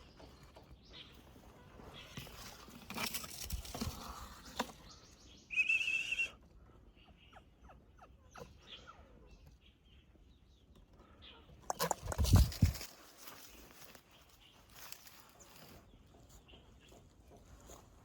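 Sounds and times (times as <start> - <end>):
rustling: 1.2 - 4.8, 11.7 - 15.8.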